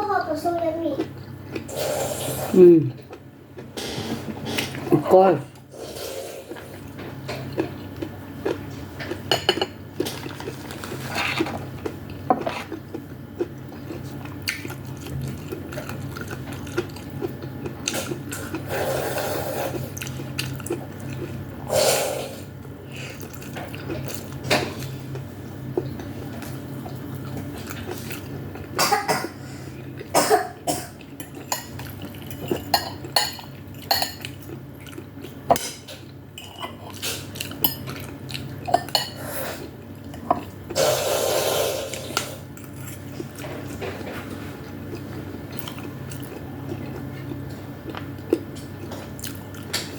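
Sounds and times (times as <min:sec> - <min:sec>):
person slurping: 0:01.7 - 0:02.6, 0:05.7 - 0:06.6, 0:18.0 - 0:19.9, 0:21.7 - 0:22.5, 0:40.7 - 0:42.4.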